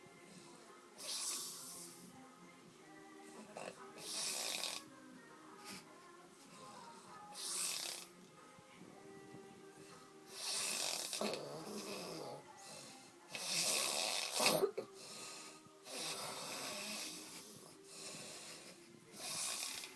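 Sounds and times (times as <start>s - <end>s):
man snoring: 3.4s - 4.9s, 7.3s - 8.1s, 10.3s - 19.9s.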